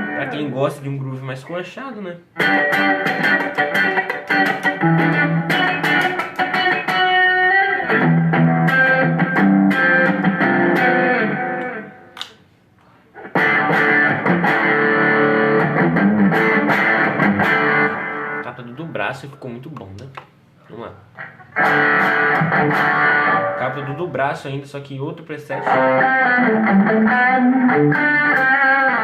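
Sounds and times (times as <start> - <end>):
electric guitar crunch groove: 2.4 - 12.1, 13.2 - 18.4, 21.2 - 24.0, 25.7 - 29.0.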